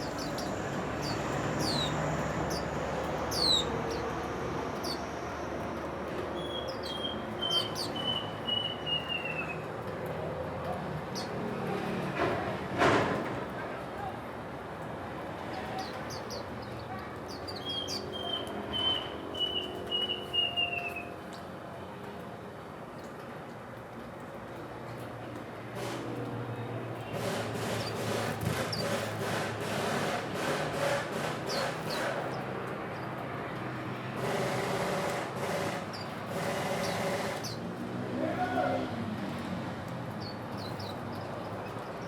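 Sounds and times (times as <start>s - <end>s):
high bird chirps: 0.0s - 4.0s, 6.4s - 9.6s, 17.4s - 21.1s
road traffic hum: 0.0s - 42.0s.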